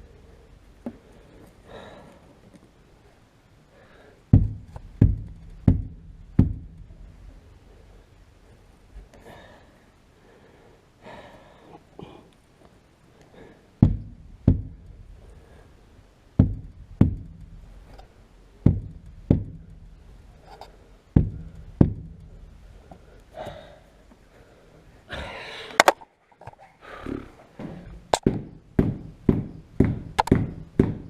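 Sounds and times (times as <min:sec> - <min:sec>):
heavy knocks on window glass: 0:04.4 - 0:06.9, 0:13.8 - 0:15.1, 0:16.4 - 0:17.6, 0:18.6 - 0:19.8, 0:21.2 - 0:22.3, 0:28.2 - 0:31.0.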